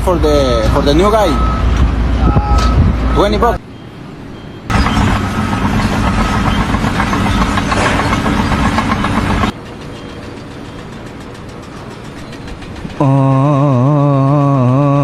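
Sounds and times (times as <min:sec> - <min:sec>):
loud engine running with rattle: 0:04.7 - 0:14.7.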